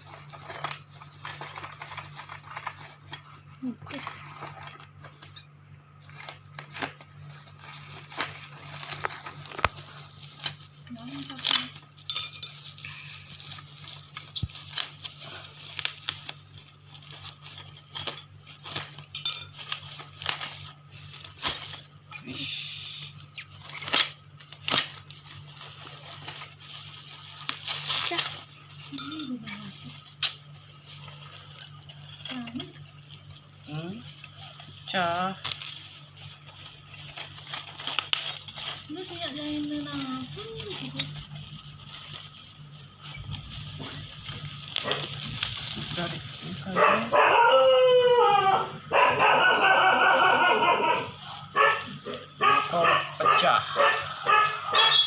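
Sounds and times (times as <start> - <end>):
packaging crinkling and tearing: 0.0 - 22.4, 23.1 - 55.0
steady low hum: 0.0 - 47.3.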